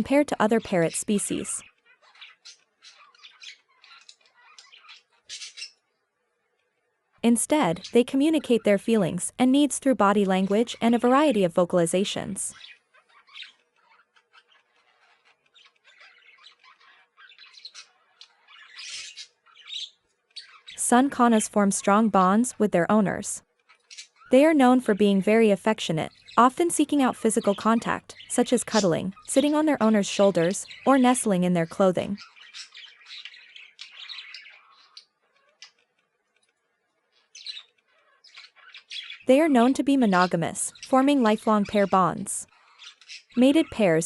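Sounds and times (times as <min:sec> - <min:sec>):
parrots chirping and squawking: 0:00.8 - 0:06.0, 0:12.5 - 0:20.8, 0:23.5 - 0:24.3, 0:26.1 - 0:26.4, 0:27.3 - 0:36.1, 0:36.9 - 0:39.3, 0:40.2 - 0:40.9, 0:41.6 - 0:43.8.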